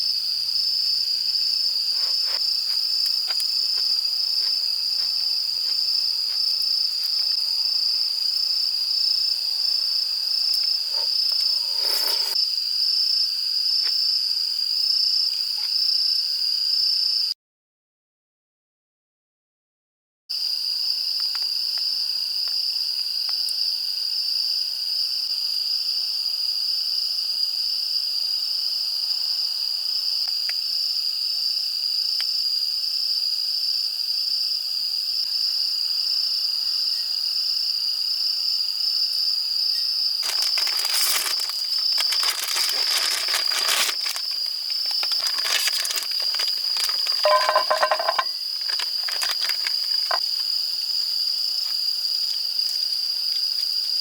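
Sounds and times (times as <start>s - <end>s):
crickets trilling: 0.0s - 17.3s, 20.4s - 54.0s
rustling handling noise: 40.2s - 50.3s.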